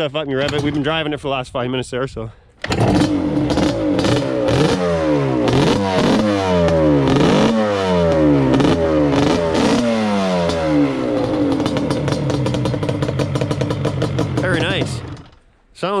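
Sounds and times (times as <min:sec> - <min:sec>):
two-stroke engine revving and idling: 0:02.6 - 0:15.4.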